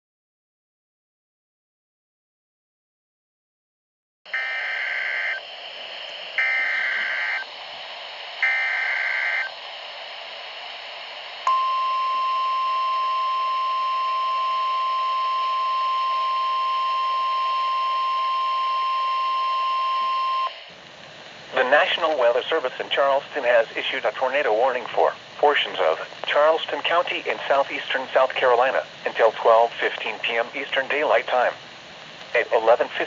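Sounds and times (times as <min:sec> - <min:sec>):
long steady attention tone: 0:04.3 - 0:20.7
buzzing data bursts: 0:06.3 - 0:07.5
steady hiss: 0:20.5 - 0:33.0.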